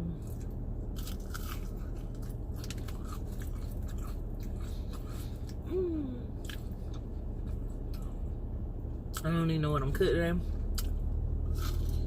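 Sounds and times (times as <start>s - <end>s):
crunchy chewing and biting: 0.2s - 5.6s, 10.6s - 12.0s
falling voice hum: 5.6s - 6.4s.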